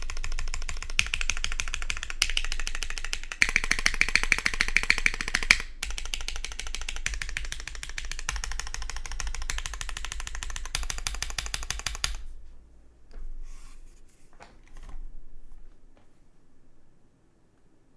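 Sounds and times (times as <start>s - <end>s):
mechanical keyboard clacks: 0.0s - 12.2s.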